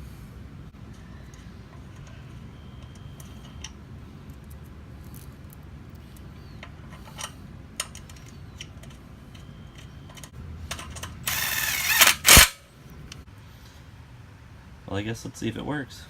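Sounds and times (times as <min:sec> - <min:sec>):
sharp loud click: 0:11.3 - 0:12.6.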